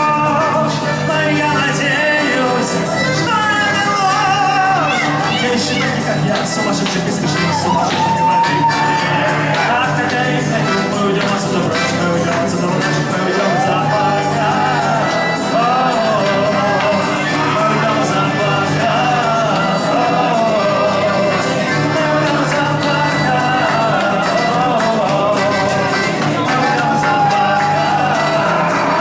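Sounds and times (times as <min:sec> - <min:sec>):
pop-rock band playing: 0:00.0 - 0:29.0
person shouting or singing: 0:03.5 - 0:10.1, 0:13.2 - 0:20.9, 0:25.5 - 0:29.0.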